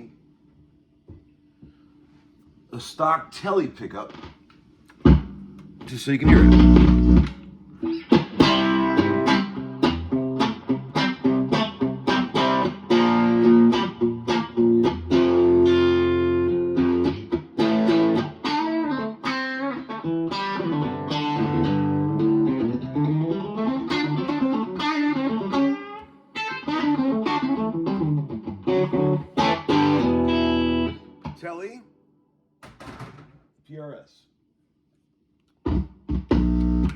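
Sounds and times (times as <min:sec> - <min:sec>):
electric guitar notes and chords: 0:04.1 - 0:31.4, 0:35.6 - 0:36.9.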